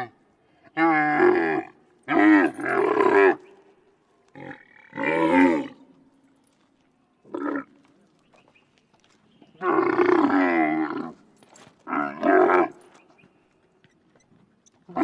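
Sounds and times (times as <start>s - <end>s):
camel calling: 9.4s - 15.0s.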